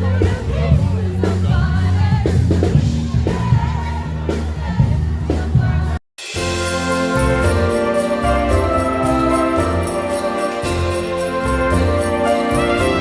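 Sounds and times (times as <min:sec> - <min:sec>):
music with jingle bells: 0:06.2 - 0:13.0.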